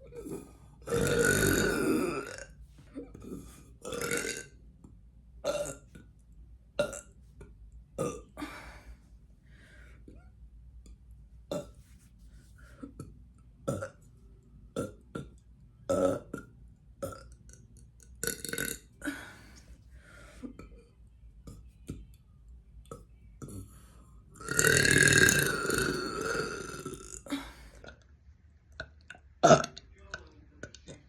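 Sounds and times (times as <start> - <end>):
woman burping: 0.0 - 4.5, 5.4 - 5.8, 6.8 - 7.1, 8.0 - 8.8, 13.7 - 14.0, 15.9 - 17.3, 18.2 - 19.6, 24.4 - 28.0, 28.8 - 29.8.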